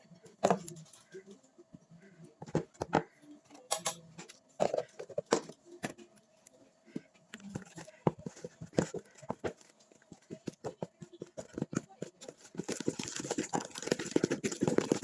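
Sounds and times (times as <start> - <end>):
kitchen utensils and dishes clattering: 2.4 - 6.0, 7.5 - 15.0.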